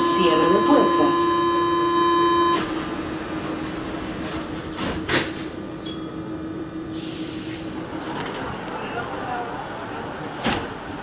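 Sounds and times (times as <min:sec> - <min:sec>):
train multi-pitch tone: 0:00.0 - 0:03.0
train low hum and running noise: 0:00.0 - 0:11.0.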